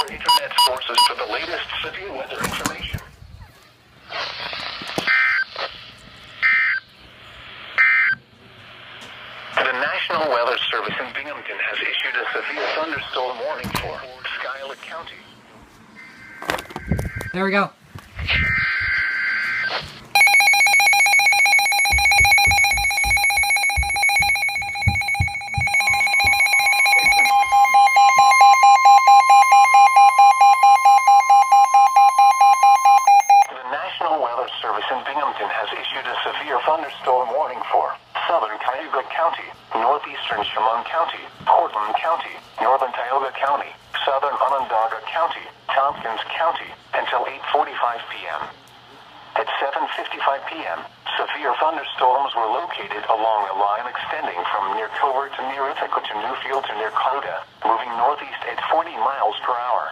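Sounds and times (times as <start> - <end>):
pulsing electronic alarm beep: 0.0 - 1.1, 18.5 - 33.5
two-tone digital data screech: 0.0 - 1.2, 18.5 - 33.5
radio hiss: 0.0 - 2.4, 4.0 - 7.9, 8.5 - 15.3, 33.5 - 48.5, 49.1 - 59.9.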